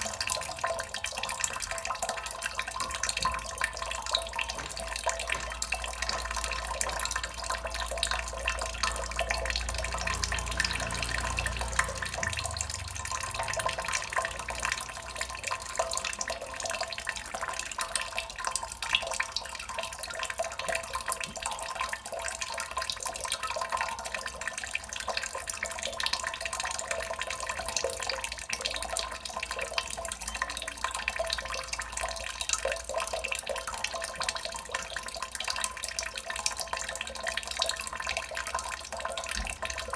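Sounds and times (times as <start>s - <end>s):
water drops splashing: 0.0s - 17.0s.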